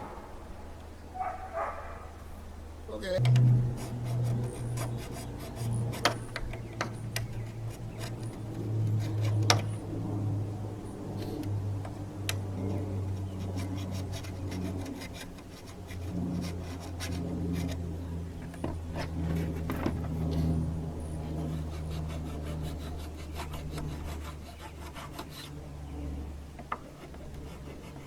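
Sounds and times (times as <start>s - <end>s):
steady low hum: 0.0s - 28.0s
hand file rasping on metal: 3.3s - 9.7s, 13.2s - 17.9s, 21.2s - 25.6s, 26.8s - 28.0s.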